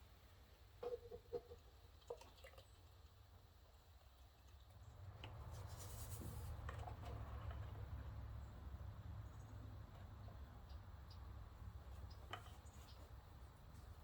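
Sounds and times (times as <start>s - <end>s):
oil pouring through funnel: 0.8s - 8.4s.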